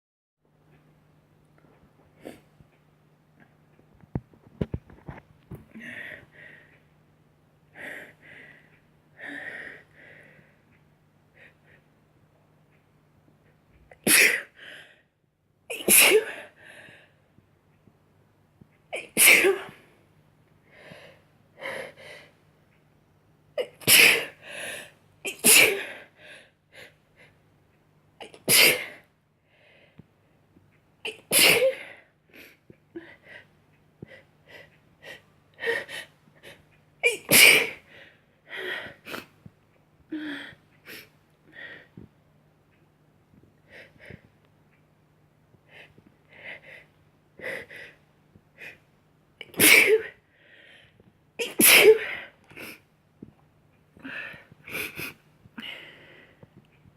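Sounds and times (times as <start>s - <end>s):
person sneezing: 49.5s - 50.2s, 51.4s - 52.8s.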